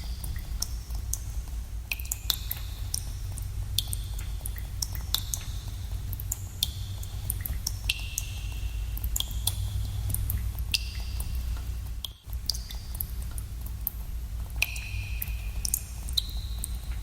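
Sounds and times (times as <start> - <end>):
steady low rumble: 0.0 - 17.0
water drops plinking: 14.6 - 16.8.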